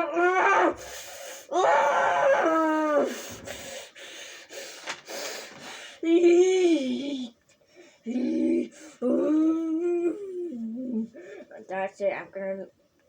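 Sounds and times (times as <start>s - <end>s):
whining vocal sounds: 0.0s - 3.6s, 8.0s - 11.2s.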